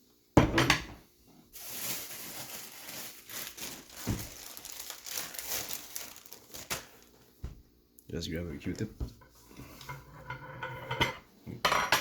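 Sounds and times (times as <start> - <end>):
packaging crinkling: 1.6 - 7.3.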